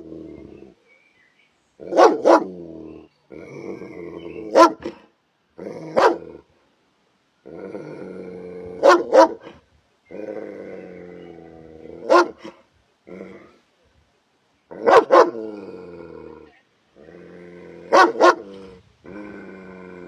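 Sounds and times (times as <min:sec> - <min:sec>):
dog growling: 0:01.8 - 0:05.0, 0:05.6 - 0:06.5, 0:07.4 - 0:09.3, 0:10.1 - 0:13.6, 0:14.7 - 0:20.0
dog barking: 0:01.9 - 0:02.5, 0:04.5 - 0:05.0, 0:06.0 - 0:06.2, 0:08.8 - 0:09.5, 0:12.0 - 0:12.6, 0:14.8 - 0:15.4, 0:17.9 - 0:18.5.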